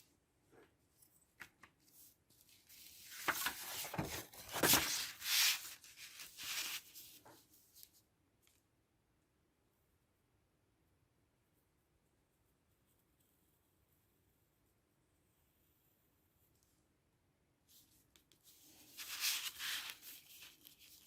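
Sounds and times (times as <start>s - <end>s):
paper rustling: 1.0s - 8.0s, 18.3s - 21.0s.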